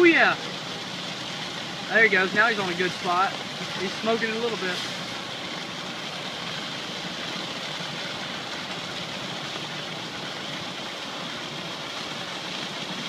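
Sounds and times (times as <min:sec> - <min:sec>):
fire engine pumps running: 0:00.0 - 0:13.0
hoses spraying water: 0:00.0 - 0:13.0.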